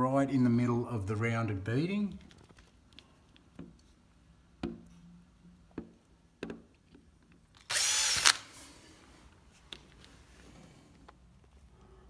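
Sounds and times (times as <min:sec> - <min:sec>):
small electric drill drilling: 0:07.7 - 0:08.7.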